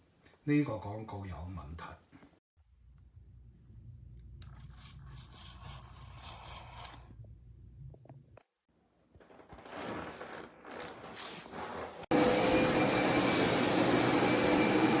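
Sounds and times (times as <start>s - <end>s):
carpet cleaner suction motor: 12.1s - 15.0s.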